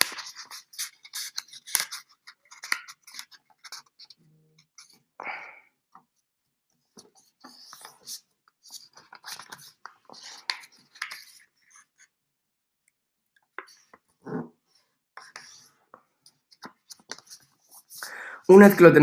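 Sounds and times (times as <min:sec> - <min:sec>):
paper rustling and scraping: 0:00.0 - 0:05.0, 0:07.0 - 0:12.1, 0:16.4 - 0:18.0.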